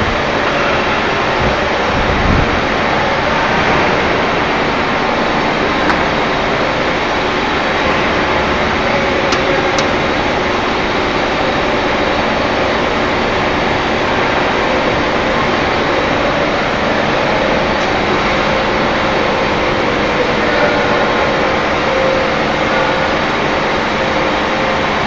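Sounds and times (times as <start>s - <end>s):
machine mechanical hiss and hum: 0.0s - 25.0s.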